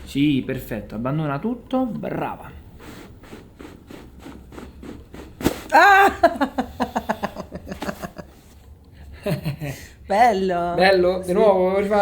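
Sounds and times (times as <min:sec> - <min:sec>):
sharp back crack: 0:05.2 - 0:05.8
woman crying out: 0:05.7 - 0:06.6.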